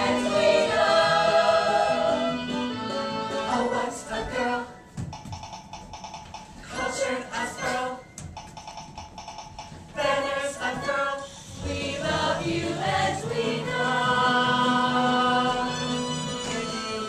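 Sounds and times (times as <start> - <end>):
group singing show tune with accompaniment: 0.0 - 5.0, 6.6 - 8.2, 9.9 - 17.0.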